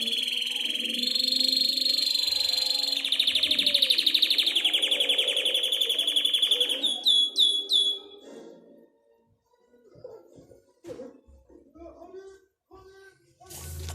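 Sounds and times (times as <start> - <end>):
canary singing trills: 0.0 - 8.2.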